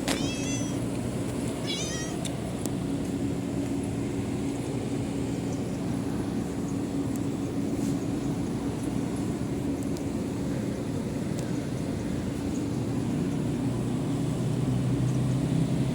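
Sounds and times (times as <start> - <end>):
steady low hum: 0.0 - 15.9
cat meowing: 0.1 - 0.8, 1.6 - 2.2.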